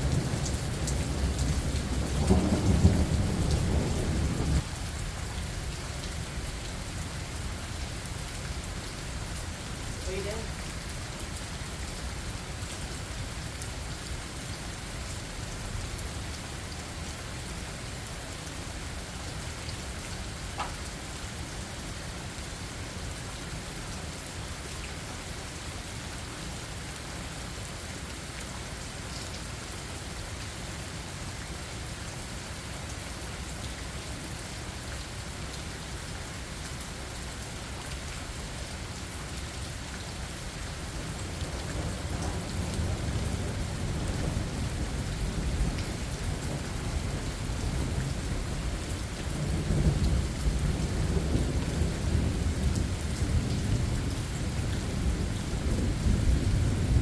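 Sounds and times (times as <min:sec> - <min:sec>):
steady rain falling: 0:00.0 - 0:57.0
small tick: 0:20.6 - 0:20.8.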